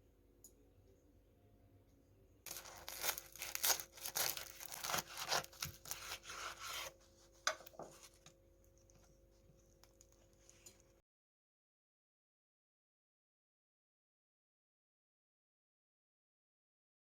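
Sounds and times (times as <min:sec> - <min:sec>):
rough rubbing and scraping: 0:02.5 - 0:07.0.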